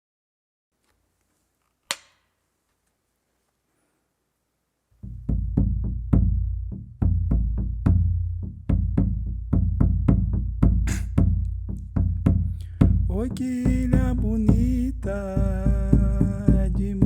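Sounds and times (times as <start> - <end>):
deep drums playing rhythm: 5.0 - 17.0.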